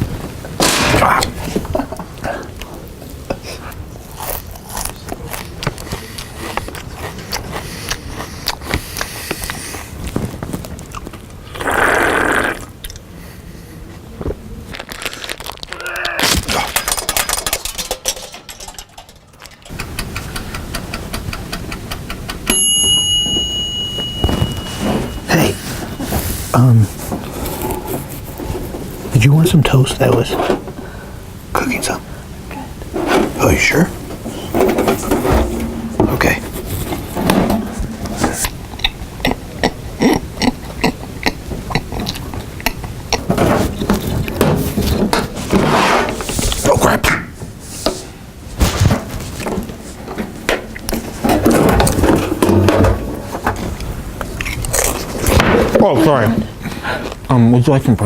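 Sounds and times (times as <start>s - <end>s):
mouth smacking: 0.7s - 10.0s, 10.8s - 13.1s, 37.9s - 43.3s
crinkling and clattering: 9.5s - 11.4s, 14.2s - 22.3s, 32.8s - 38.8s, 47.9s - 55.9s
loud toast crunching: 14.7s - 17.9s
high electronic beep: 22.5s - 25.3s.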